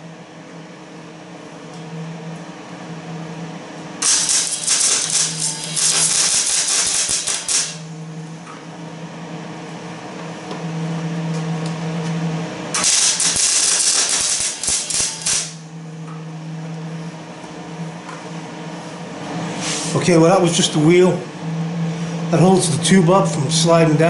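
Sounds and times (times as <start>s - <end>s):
steady machine hum: 0.0s - 24.0s
welding arc crackling: 4.0s - 7.9s, 12.8s - 15.7s.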